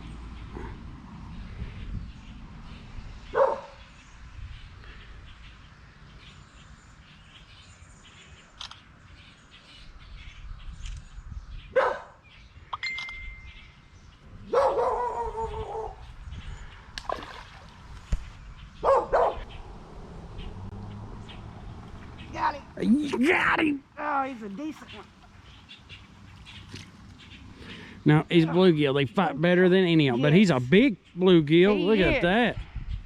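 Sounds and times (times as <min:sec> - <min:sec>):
dog barking: 0:03.3 - 0:03.8, 0:11.7 - 0:12.2, 0:14.5 - 0:16.0, 0:18.8 - 0:19.6.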